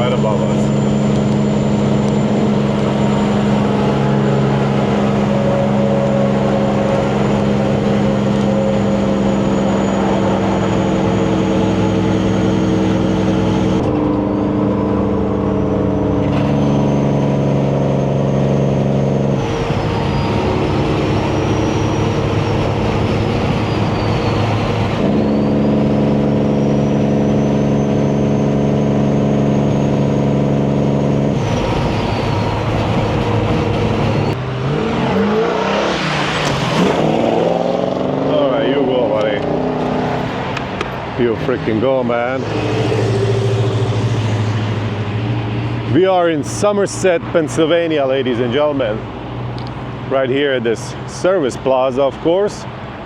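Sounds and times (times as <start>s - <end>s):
truck diesel engine pulling hard: 0.0s - 53.0s
turbo whistle: 15.6s - 34.4s, 41.8s - 45.6s.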